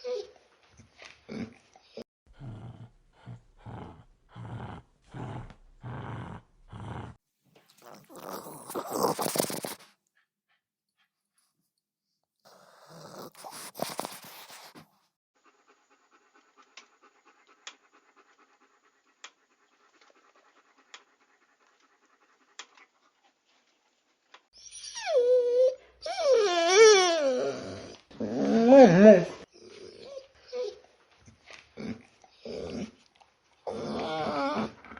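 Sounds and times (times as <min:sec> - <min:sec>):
high-pitched dog whines: 0:07.8 - 0:09.8, 0:12.6 - 0:14.8, 0:24.6 - 0:30.9, 0:33.6 - 0:34.9
dog snorts: 0:07.8 - 0:10.0, 0:12.5 - 0:15.0
dog panting: 0:07.8 - 0:11.6, 0:12.5 - 0:24.5.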